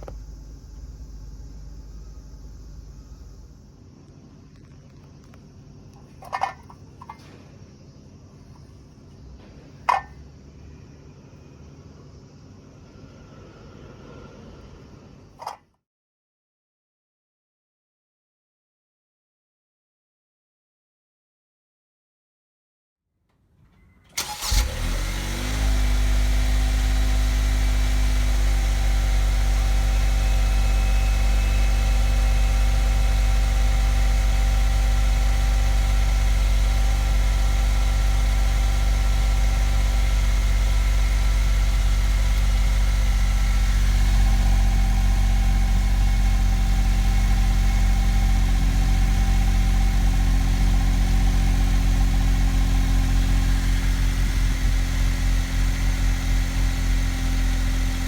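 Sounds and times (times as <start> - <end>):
car engine starting: 0.0 - 3.8, 24.1 - 58.0
car engine idling: 0.0 - 8.7, 24.2 - 58.0.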